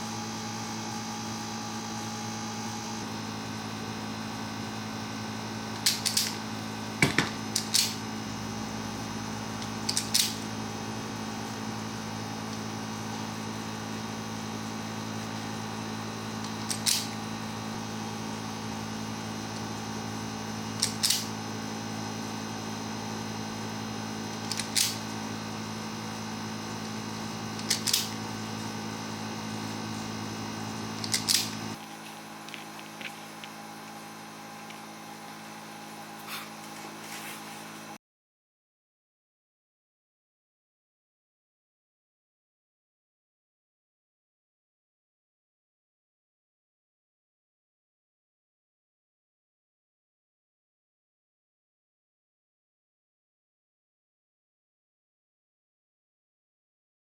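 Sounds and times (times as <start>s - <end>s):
electrical hum: 0.0s - 38.0s
sharp short clicks: 9.9s - 10.4s, 20.8s - 21.3s, 24.5s - 25.0s.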